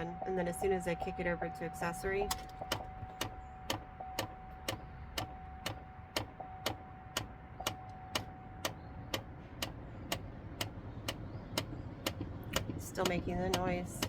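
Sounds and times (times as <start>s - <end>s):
sharp clicking under dashboard: 2.2s - 14.0s.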